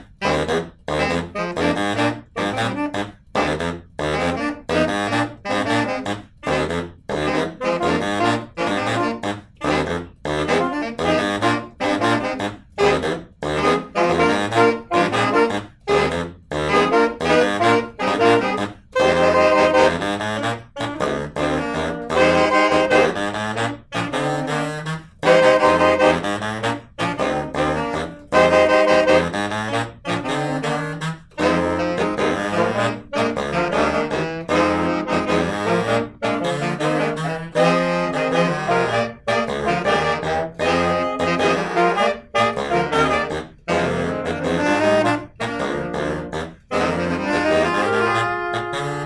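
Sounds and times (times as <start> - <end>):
saxophone quintet playing chords: 0.0 - 49.0.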